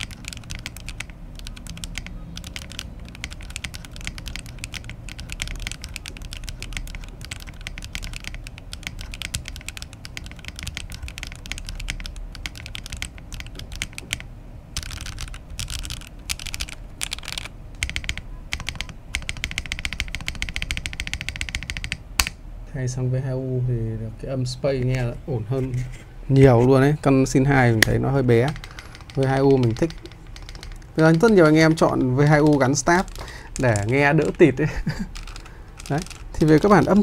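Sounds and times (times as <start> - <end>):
mechanical keyboard typing: 0.0 - 22.3, 27.8 - 37.0.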